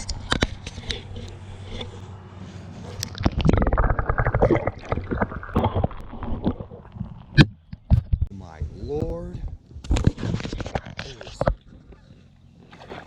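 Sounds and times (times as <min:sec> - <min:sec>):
water splashing and gurgling: 0:03.0 - 0:07.5.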